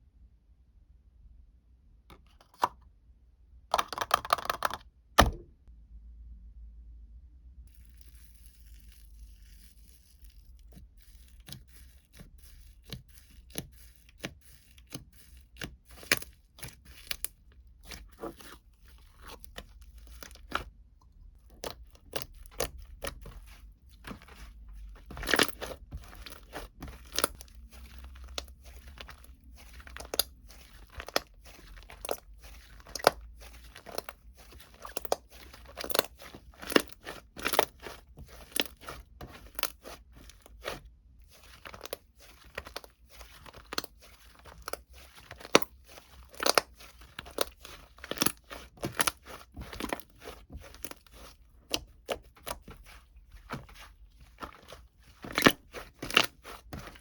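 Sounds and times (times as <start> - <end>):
packaging crinkling: 21.5 - 51.4.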